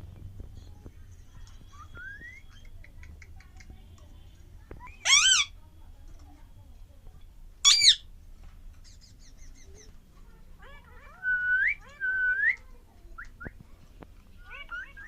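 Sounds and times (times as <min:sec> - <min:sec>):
parakeet chatter: 0:01.0 - 0:05.6, 0:07.6 - 0:08.1, 0:08.7 - 0:12.0, 0:14.3 - 0:15.0
parakeet screeching: 0:05.0 - 0:05.5, 0:07.6 - 0:08.1.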